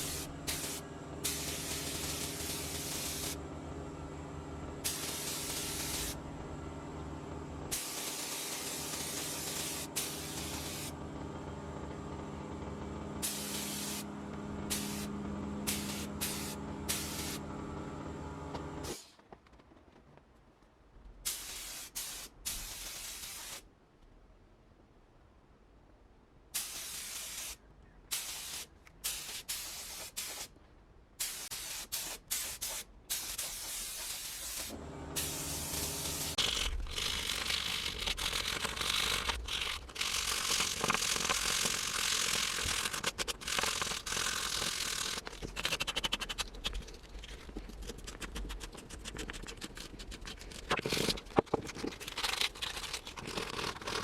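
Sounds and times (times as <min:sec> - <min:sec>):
pressurised spray hissing: 0:00.0 - 0:03.4, 0:04.8 - 0:06.2, 0:07.7 - 0:10.9, 0:13.2 - 0:14.1, 0:14.7 - 0:15.1, 0:15.7 - 0:17.4, 0:21.3 - 0:23.6, 0:26.6 - 0:30.5, 0:31.2 - 0:39.3
low hum: 0:00.0 - 0:18.9, 0:34.6 - 0:43.0.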